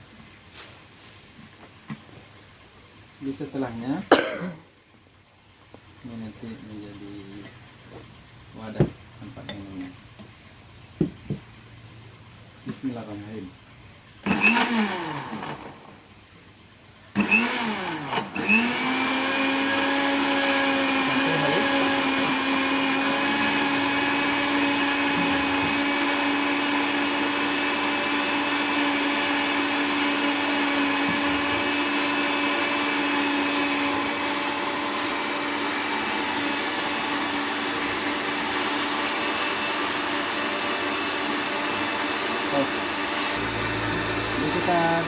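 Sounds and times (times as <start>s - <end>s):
electric blender grinding: 14.2s - 16.0s, 17.2s - 45.0s.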